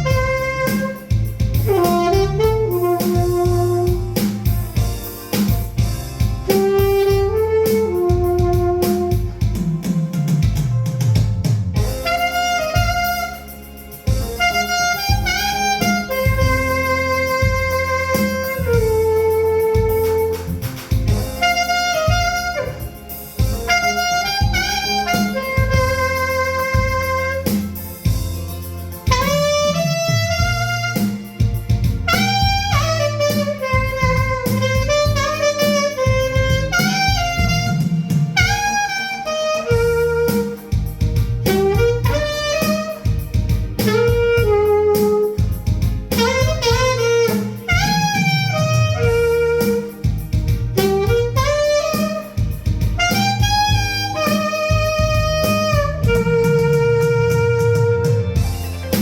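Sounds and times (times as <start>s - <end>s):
backing track with bass and guitar: 0.0s - 59.0s
saxophone melody: 0.0s - 59.0s.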